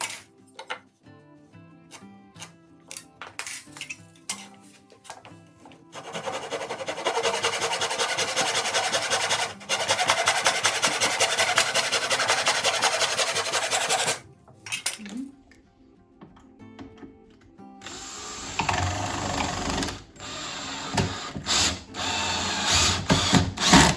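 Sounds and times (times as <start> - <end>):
background music: 0.0 - 23.9
power tool running: 17.8 - 23.9.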